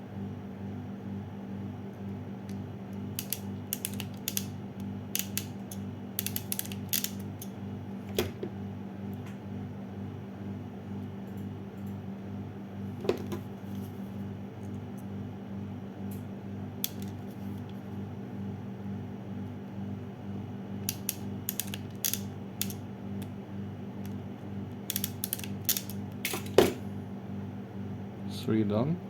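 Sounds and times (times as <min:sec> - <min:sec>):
steady low hum: 0:00.0 - 0:29.0
crimping tool clicking: 0:02.5 - 0:04.5, 0:05.2 - 0:07.5, 0:20.8 - 0:22.8, 0:24.9 - 0:26.5.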